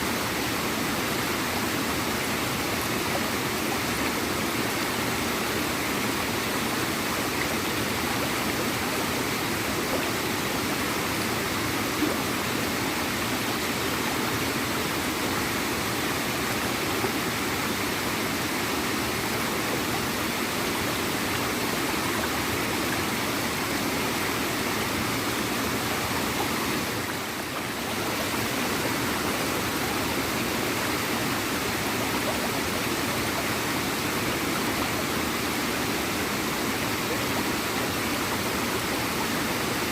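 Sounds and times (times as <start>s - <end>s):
small waterfall gurgling and splashing: 0.0s - 39.9s.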